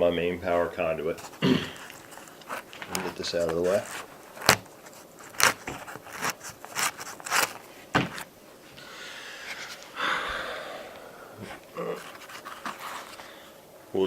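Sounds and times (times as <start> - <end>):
rustling scrape: 0.9 - 8.8, 9.4 - 10.0, 11.4 - 13.6.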